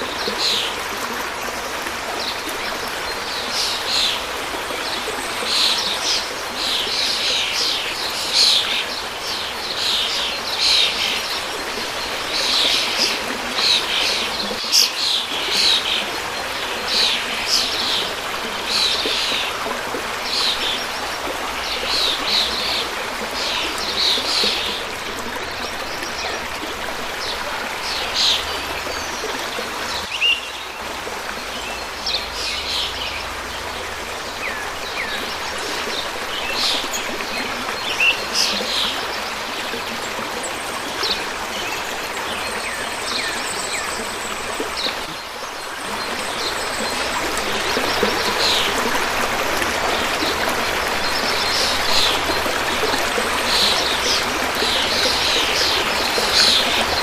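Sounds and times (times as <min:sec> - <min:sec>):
stream flowing: 0:00.0 - 0:57.0.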